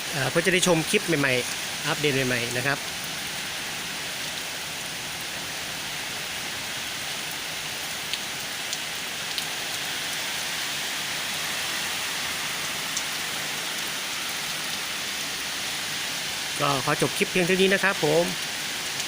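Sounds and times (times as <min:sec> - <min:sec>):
heavy rain falling: 0:00.0 - 0:19.0.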